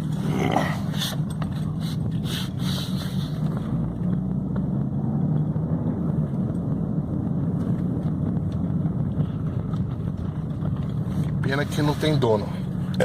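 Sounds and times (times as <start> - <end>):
car engine running steadily: 0.0 - 13.0.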